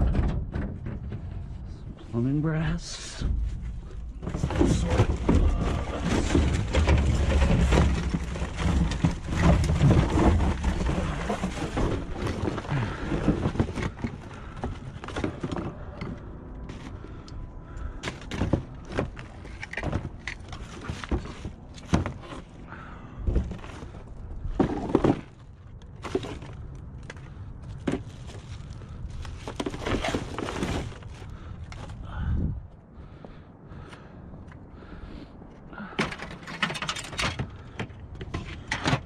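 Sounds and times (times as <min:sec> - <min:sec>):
wind rumble on microphone: 0:30.6 - 0:35.5.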